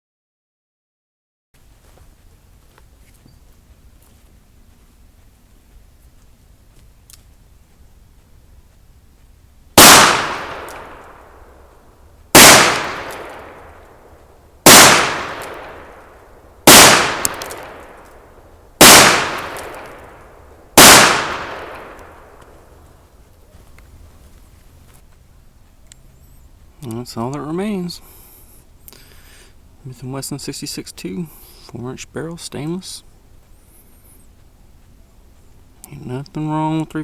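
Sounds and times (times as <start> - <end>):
revolver gunshots echoing: 9.8 - 11.7, 12.3 - 22.7.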